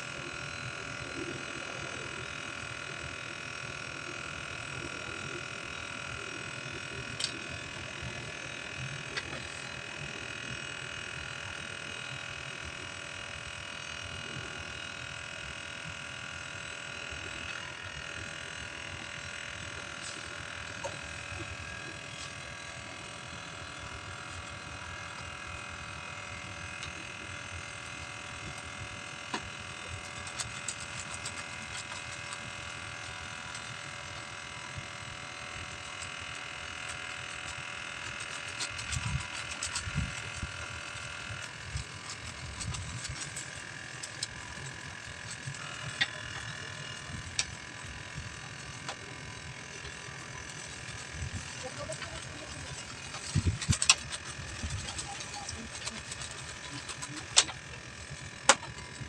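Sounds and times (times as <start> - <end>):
motor humming: 0.0 - 59.0.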